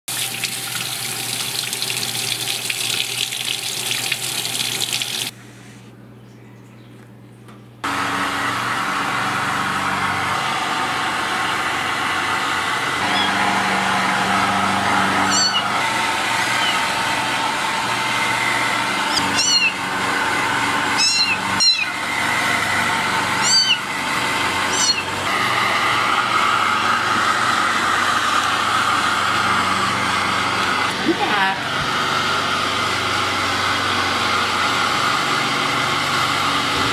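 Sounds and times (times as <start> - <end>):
hair dryer blowing: 7.8 - 36.9
kitten meowing: 13.0 - 13.4, 15.3 - 15.7, 19.1 - 19.8, 21.0 - 22.0, 23.4 - 23.9, 24.7 - 25.1.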